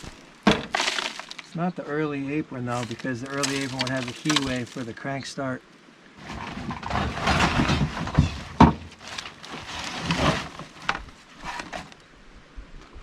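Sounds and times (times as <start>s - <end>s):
debris rummaged and clattering: 0.0s - 1.6s, 2.7s - 5.0s, 6.2s - 12.0s.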